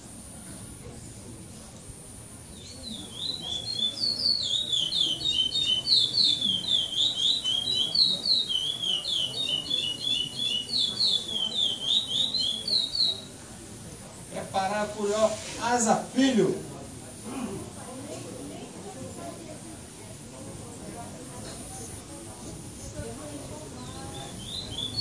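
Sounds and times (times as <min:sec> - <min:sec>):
seed finch singing: 0:02.5 - 0:13.3, 0:23.7 - 0:25.0.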